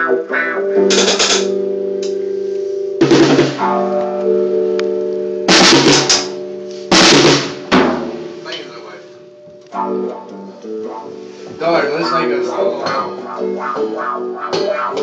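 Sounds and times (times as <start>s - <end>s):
drum and guitar crashes: 0.8s - 1.6s, 3.0s - 3.8s, 5.5s - 8.7s, 12.8s - 15.0s.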